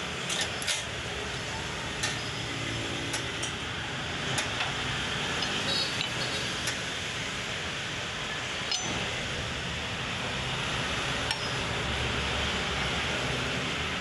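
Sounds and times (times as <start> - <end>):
metallic clinks: 8.7 - 9.0.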